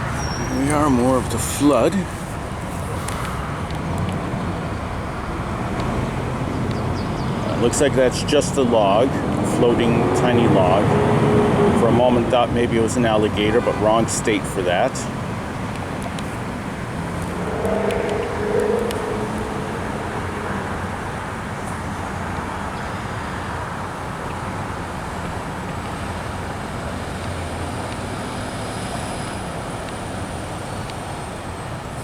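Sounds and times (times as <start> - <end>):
road traffic noise: 0.0 - 32.0
short pitched tone: 17.3 - 21.0.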